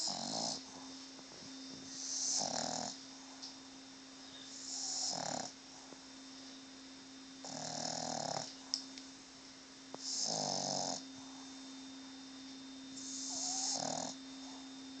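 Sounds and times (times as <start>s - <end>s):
dog snoring: 0.0s - 1.0s, 1.8s - 3.4s, 4.4s - 6.0s, 7.4s - 8.7s, 9.9s - 11.6s, 13.0s - 15.0s.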